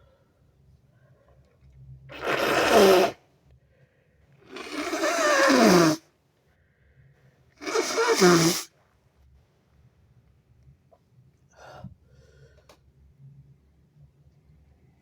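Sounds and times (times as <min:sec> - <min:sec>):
harsh nose blowing: 0:02.1 - 0:03.2, 0:04.4 - 0:06.0, 0:07.6 - 0:08.7.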